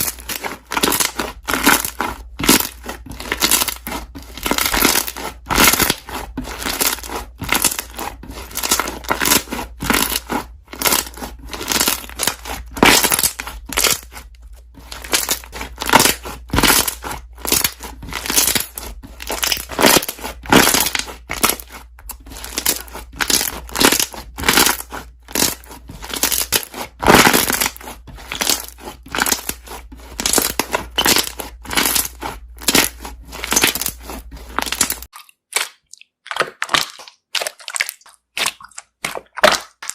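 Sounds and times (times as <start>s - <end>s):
slime being squeezed: 14.8s - 39.9s
air bubbles popping: 35.1s - 39.9s.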